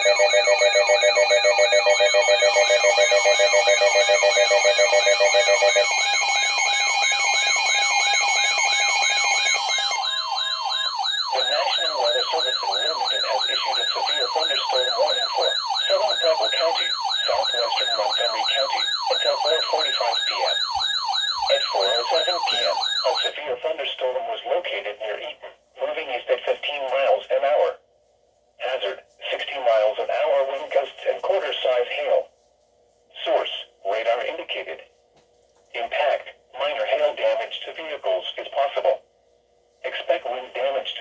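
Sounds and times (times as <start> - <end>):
warbling electronic alert tones: 0.0 - 23.3.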